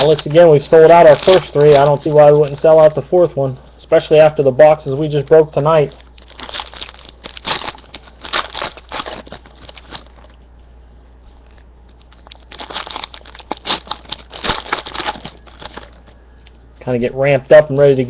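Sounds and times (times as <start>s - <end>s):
foil wrappers crinkling and tearing: 0.0s - 3.0s, 5.7s - 10.4s, 11.5s - 16.3s.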